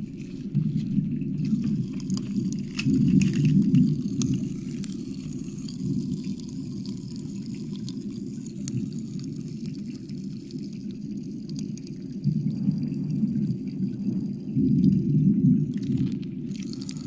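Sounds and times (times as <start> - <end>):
steady low rumble: 0.0 - 7.2
wet mouth clicks and licking: 1.4 - 7.1.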